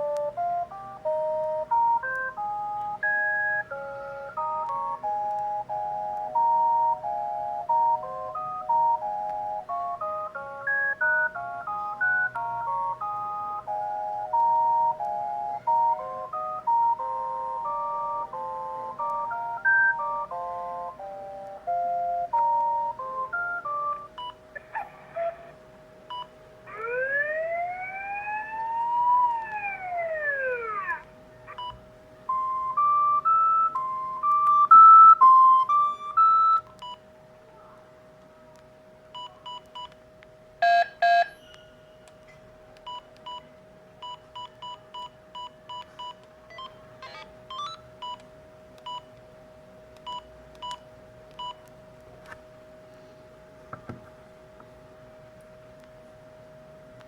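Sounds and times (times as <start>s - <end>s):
phone ringtone beeps: 0.0s - 24.7s, 26.1s - 37.0s, 40.6s - 41.7s, 44.0s - 48.2s
steady hum: 0.0s - 39.1s
siren-like gliding tone: 26.7s - 31.0s.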